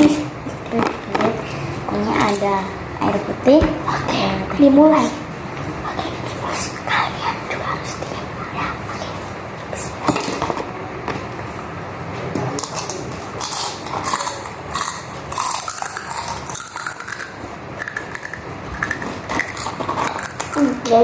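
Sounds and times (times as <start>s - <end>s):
chewing crunchy snacks: 12.6s - 20.9s.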